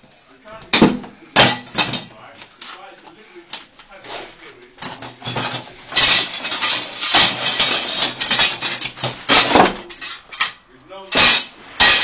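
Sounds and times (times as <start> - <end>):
metal tools clinking: 4.8 - 12.0.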